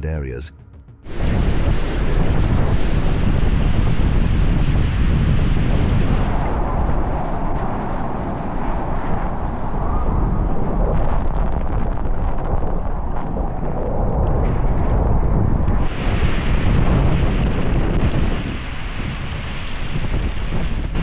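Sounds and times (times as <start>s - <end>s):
wind buffeting microphone: 1.1s - 21.0s
rushing water: 15.8s - 21.0s.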